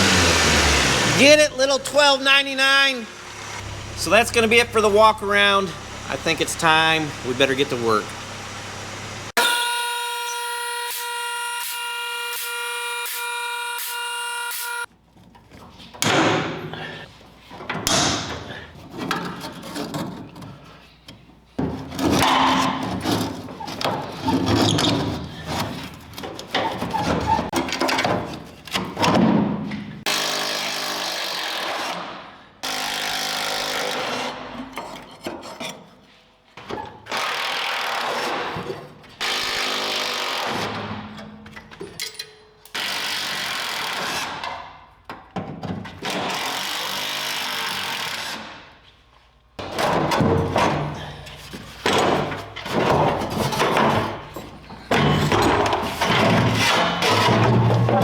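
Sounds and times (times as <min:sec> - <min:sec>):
power tool running in bursts: 0:00.0 - 0:01.2.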